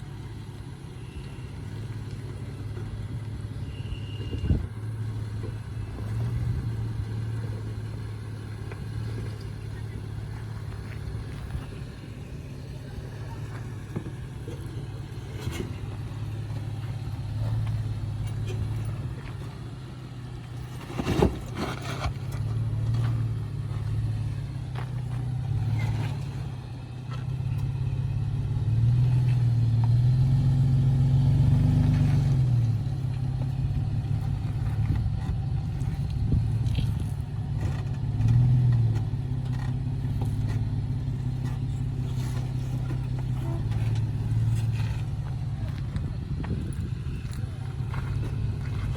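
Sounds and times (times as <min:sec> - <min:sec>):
off-road vehicle engine running: 0:00.0 - 0:48.9
knocks and scrapes: 0:12.9 - 0:26.5, 0:33.4 - 0:48.9.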